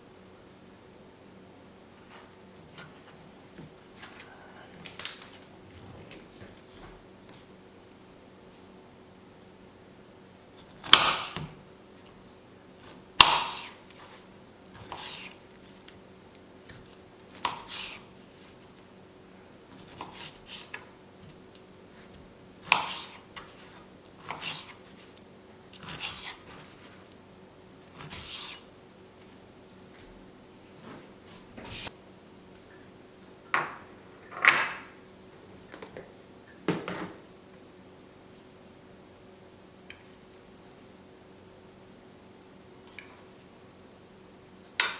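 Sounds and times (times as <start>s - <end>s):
rustling or scraping: 30.7s - 31.9s.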